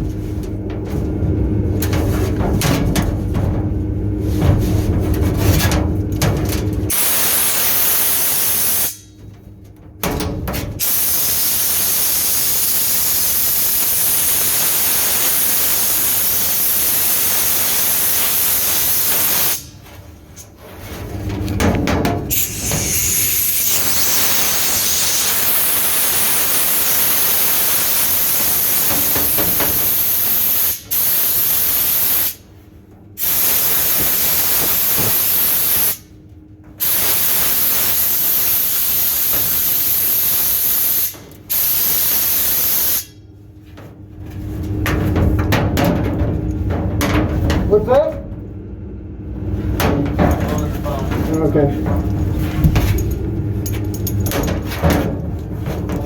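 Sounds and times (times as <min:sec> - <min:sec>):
rushing air hiss: 0:06.9 - 0:09.2, 0:10.8 - 0:19.8, 0:22.3 - 0:32.4, 0:33.2 - 0:36.1, 0:36.8 - 0:43.2.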